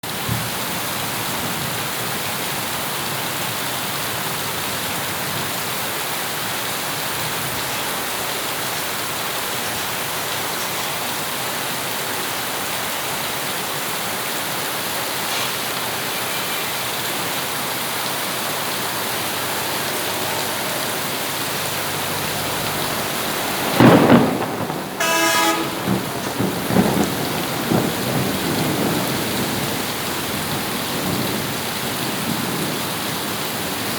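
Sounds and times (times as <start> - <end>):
heavy rainfall: 0.0 - 33.9
thunder crack and rumbling: 18.1 - 33.9
brief horn-like tone: 25.0 - 26.1.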